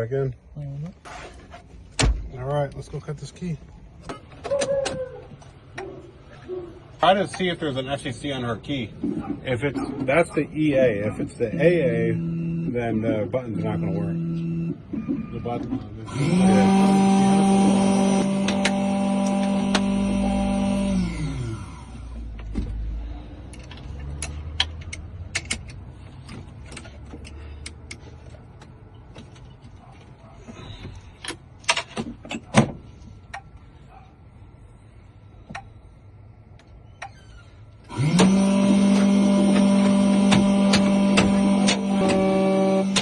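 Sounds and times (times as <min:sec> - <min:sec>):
key-cutting machine motor: 0:16.1 - 0:21.8, 0:37.9 - 0:43.0.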